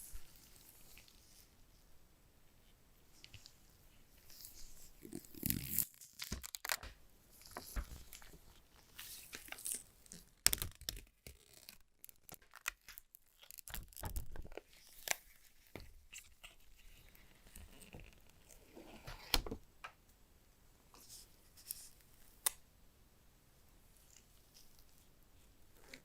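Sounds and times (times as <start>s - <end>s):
wrapping tearing and crinkling: 4.3s - 18.6s.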